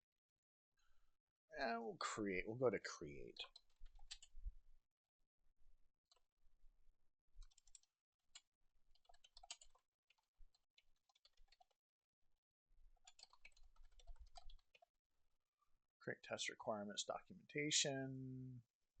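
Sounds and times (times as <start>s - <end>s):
faint keyboard typing: 3.3s - 4.5s, 7.4s - 11.8s, 13.0s - 14.9s.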